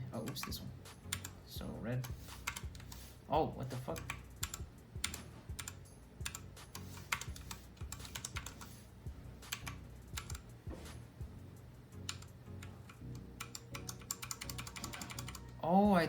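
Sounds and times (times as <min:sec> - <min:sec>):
mechanical keyboard keys clacking: 0:00.2 - 0:01.4, 0:02.0 - 0:03.0, 0:03.9 - 0:08.7, 0:09.5 - 0:10.5, 0:12.0 - 0:15.5.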